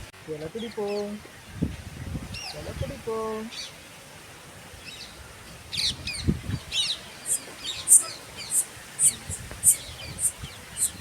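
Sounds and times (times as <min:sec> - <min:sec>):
small birds chirping: 0:00.3 - 0:04.1, 0:04.7 - 0:11.0
sharp high bird call: 0:07.3 - 0:11.0.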